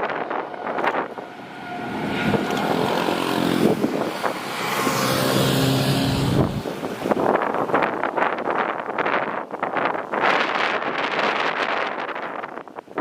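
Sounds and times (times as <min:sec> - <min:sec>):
jet engines rushing: 0:00.0 - 0:07.2
wind buffeting microphone: 0:00.0 - 0:13.0.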